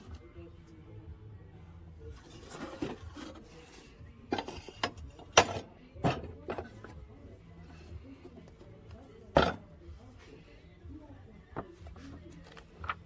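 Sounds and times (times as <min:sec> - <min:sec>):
rubbing and scraping: 0:02.2 - 0:05.6.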